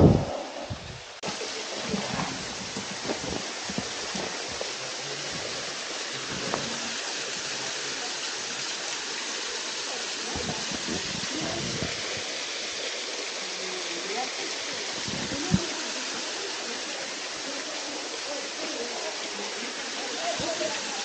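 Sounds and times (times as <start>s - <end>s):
low bumps: 0.0s - 1.2s, 1.8s - 7.0s
waterfall rushing: 0.0s - 21.0s.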